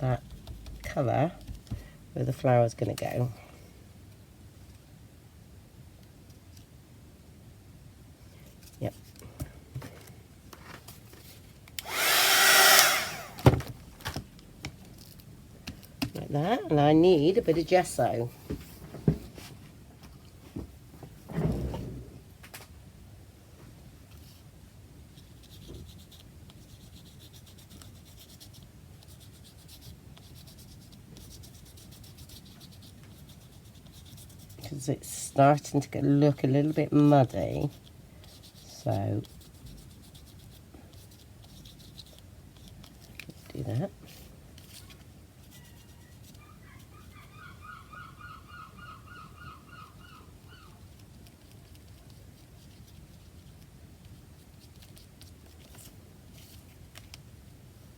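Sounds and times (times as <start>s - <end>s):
brush scratching on card: 25.1s - 34.8s, 36.3s - 47.2s, 50.4s - 57.1s
bird calling: 45.9s - 50.8s.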